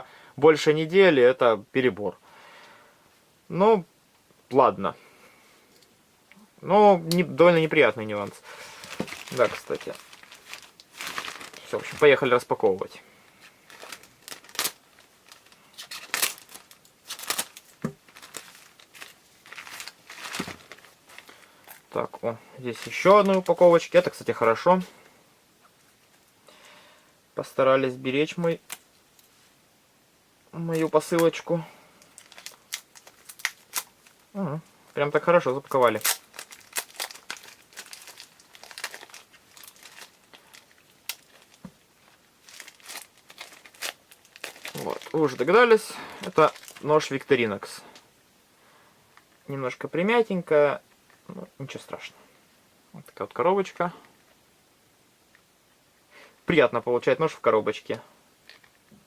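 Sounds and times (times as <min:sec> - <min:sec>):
plastic bag crinkling and tearing: 0:07.2 - 0:24.7, 0:30.7 - 0:48.0.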